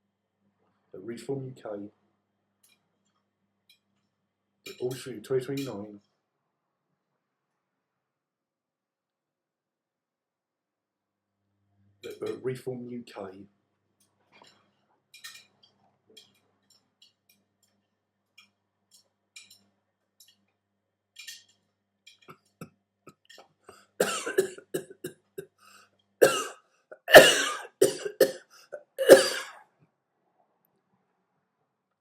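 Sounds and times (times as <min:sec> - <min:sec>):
person coughing harshly: 0:24.0 - 0:25.1, 0:26.2 - 0:29.6.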